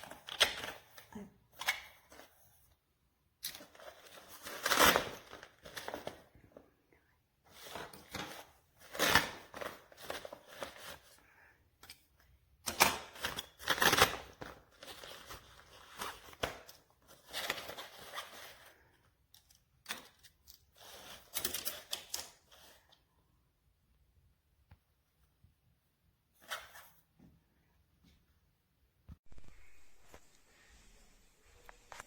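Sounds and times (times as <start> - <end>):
handling rustling and scraping: 0.0 - 6.8, 7.5 - 11.2, 11.8 - 23.1, 29.2 - 32.0.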